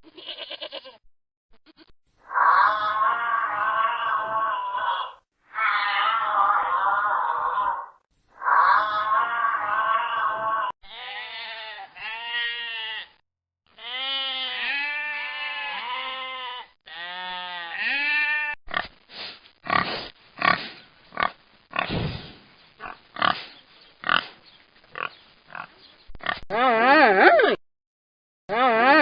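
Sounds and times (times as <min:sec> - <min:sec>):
rising and falling animal calls: 0:02.2 - 0:10.7
pig grunting: 0:19.7 - 0:24.4.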